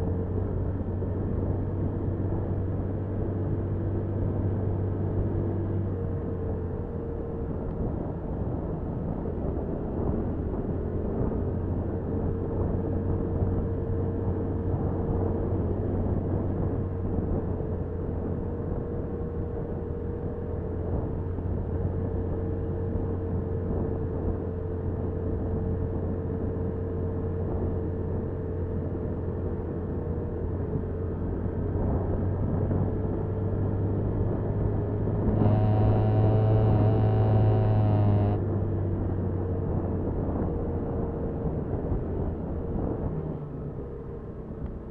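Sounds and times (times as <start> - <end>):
road and wind noise: 0.0 - 44.9
motorcycle engine running: 33.3 - 43.0.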